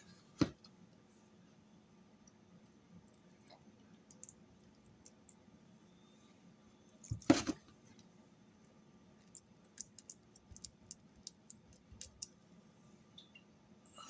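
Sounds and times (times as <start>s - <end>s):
faint utensil clicks and taps: 9.2s - 12.4s.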